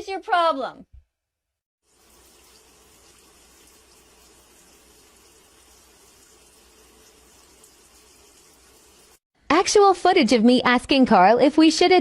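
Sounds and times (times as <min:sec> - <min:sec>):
faint steady hiss: 0:01.9 - 0:09.2.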